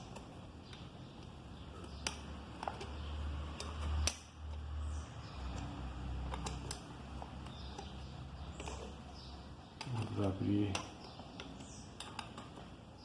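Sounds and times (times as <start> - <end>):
metal tools clicking and clinking: 9.8 - 12.7.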